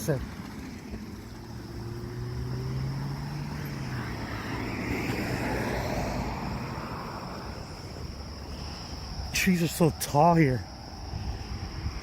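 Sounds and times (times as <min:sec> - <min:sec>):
low engine hum: 0:00.0 - 0:09.4
vehicle passing rush: 0:00.0 - 0:12.0.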